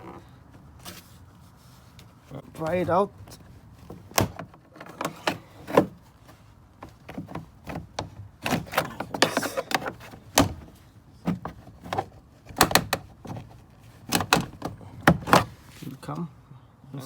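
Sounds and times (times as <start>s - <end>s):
trim panel knocking: 3.8s - 6.0s, 6.8s - 13.5s, 14.1s - 15.6s.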